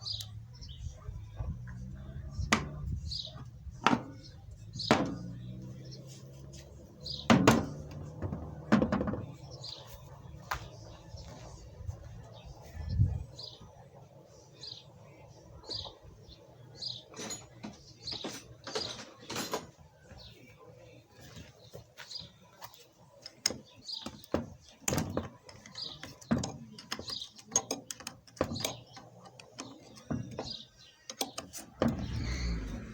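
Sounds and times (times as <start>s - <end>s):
sharp knocks and clinks: 17.0s - 19.8s.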